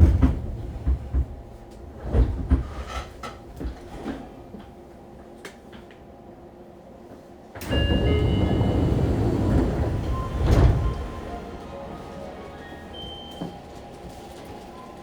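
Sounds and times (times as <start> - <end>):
train doors sliding open: 0.0 - 4.8, 7.5 - 15.0
brief chime: 7.6 - 13.7.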